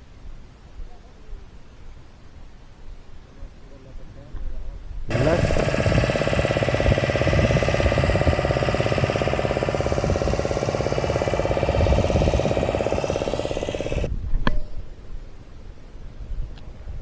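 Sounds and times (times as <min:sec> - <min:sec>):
small engine knocking: 0:05.1 - 0:14.7
sharp click: 0:14.4 - 0:14.8.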